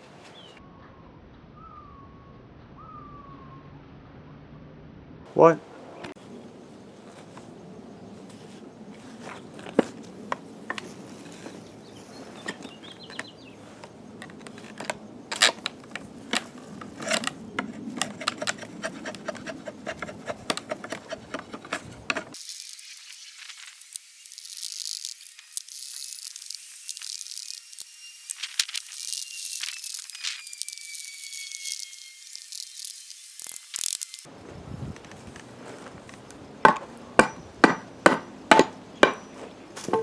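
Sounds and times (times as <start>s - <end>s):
draw knife scraping wood: 9.2s - 22.4s
thin high hiss: 22.4s - 34.3s.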